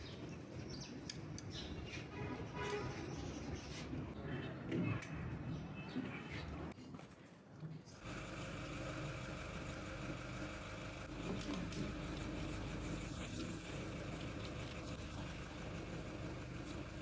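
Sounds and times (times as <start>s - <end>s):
engine idling: 8.0s - 17.0s.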